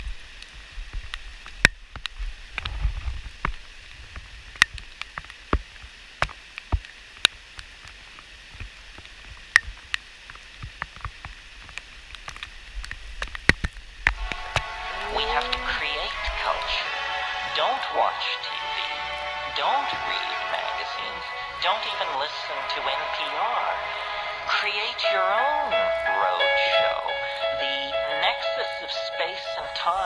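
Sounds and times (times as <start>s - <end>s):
stream water flowing: 3.4s - 26.0s
low rumble: 13.8s - 20.3s.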